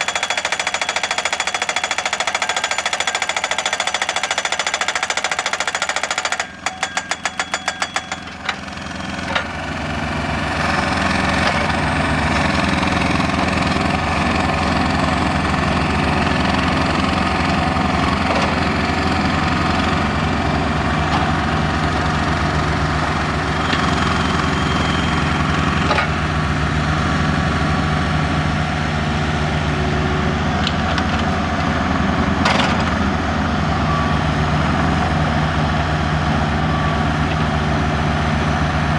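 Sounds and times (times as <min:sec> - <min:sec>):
pile driver hammer pounding: 0:00.0 - 0:09.6.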